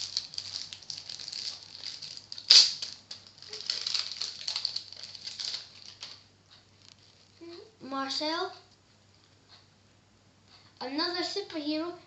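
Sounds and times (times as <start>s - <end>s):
plastic wrappers crinkling: 0.0s - 7.4s.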